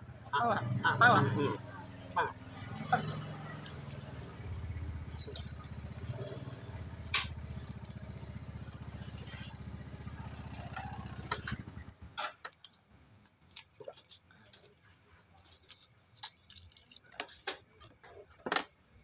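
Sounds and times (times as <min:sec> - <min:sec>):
small engine running: 0:00.0 - 0:12.2.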